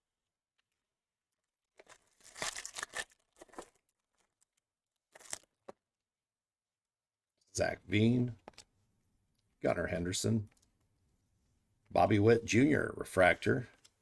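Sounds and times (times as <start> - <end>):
wrapper tearing and crinkling: 1.8 - 5.6.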